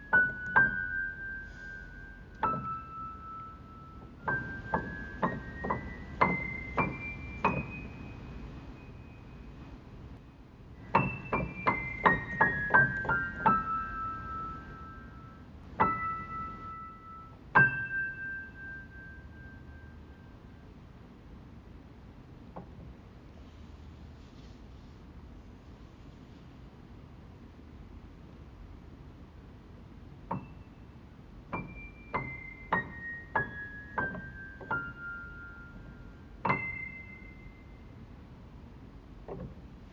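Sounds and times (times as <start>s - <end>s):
soft piano music: 0.0s - 21.1s, 30.1s - 39.9s.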